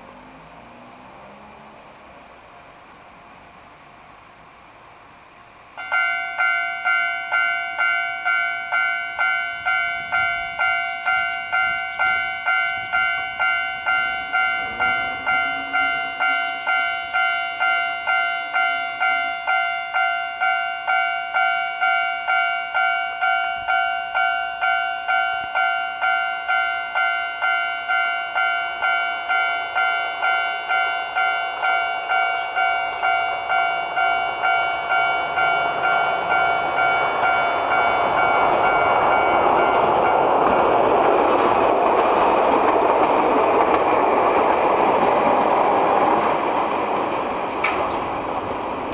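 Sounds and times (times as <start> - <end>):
train passing: 0.0 - 48.9
level crossing alarm dinging: 5.8 - 40.7.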